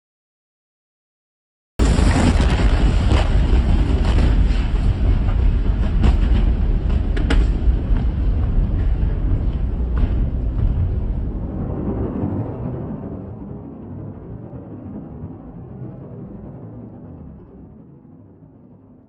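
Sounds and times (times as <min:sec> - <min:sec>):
crackles and pops: 0:01.8 - 0:10.9
explosion with deep rumble: 0:01.8 - 0:15.7.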